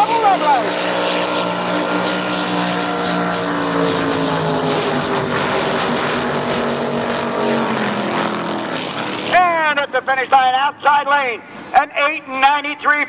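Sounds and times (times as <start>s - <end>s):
boat engines running flat out: 0.0s - 9.4s.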